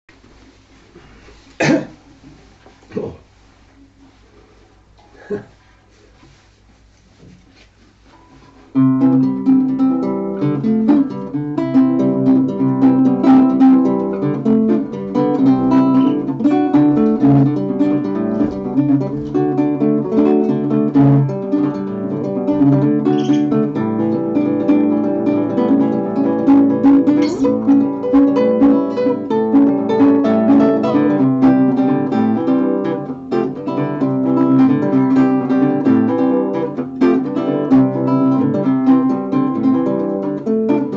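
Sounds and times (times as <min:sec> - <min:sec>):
classical guitar plucked: 0:08.2 - 0:40.9.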